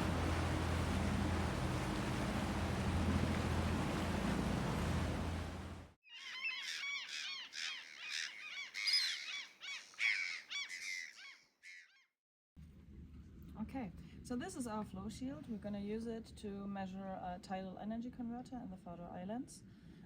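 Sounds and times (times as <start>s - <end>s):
low hum: 0.0s - 6.0s
steady rushing sea-like noise: 0.0s - 6.0s
birds calling harshly: 6.0s - 12.1s.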